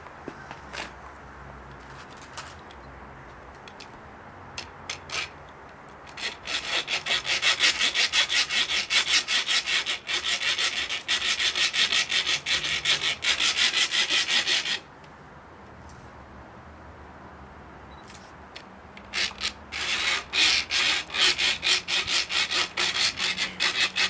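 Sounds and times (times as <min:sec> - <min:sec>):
hacksaw sawing steel: 0:04.6 - 0:05.4, 0:06.0 - 0:14.9, 0:19.0 - 0:24.0.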